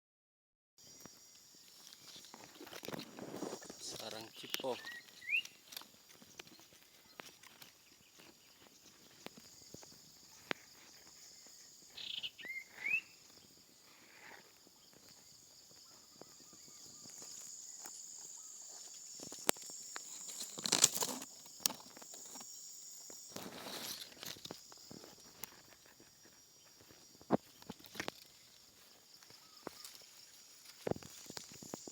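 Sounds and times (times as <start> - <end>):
high-pitched insect drone: 0.8 - 31.9
bird chirps: 3.9 - 9.6, 10.2 - 13.5
rustling: 19.1 - 22.5.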